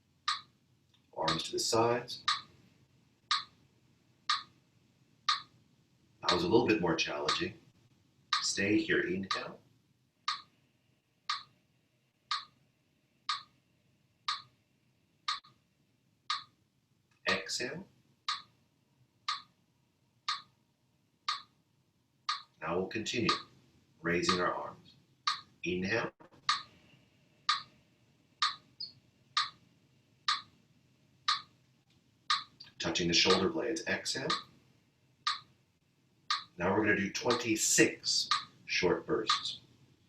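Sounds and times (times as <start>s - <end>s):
faint room hiss: 0.0s - 40.0s
steady ticking: 0.2s - 0.5s, 1.3s - 1.5s, 2.2s - 2.5s, 3.3s - 3.6s, 4.2s - 4.5s, 5.3s - 5.5s, 6.2s - 6.5s, 7.2s - 7.5s, 8.3s - 8.6s, 9.2s - 9.5s, 10.2s - 10.5s, 11.3s - 11.5s, 12.3s - 12.6s, 13.2s - 13.5s, 14.2s - 14.5s, 15.3s - 15.6s, 16.3s - 16.6s, 18.2s - 18.6s, 19.3s - 19.5s, 20.2s - 20.5s, 21.3s - 21.6s, 22.3s - 23.5s, 24.2s - 26.8s, 27.4s - 27.8s, 28.4s - 29.6s, 30.2s - 30.6s, 31.2s - 31.6s, 32.3s - 33.6s, 34.2s - 34.6s, 35.2s - 35.5s, 36.3s - 36.6s, 37.2s - 38.6s, 39.2s - 39.6s.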